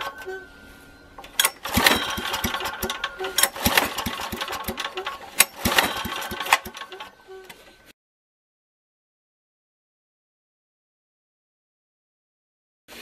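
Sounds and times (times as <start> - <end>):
generator engine firing unevenly: 1.1 - 7.4
rattle bursts: 1.3 - 7.3.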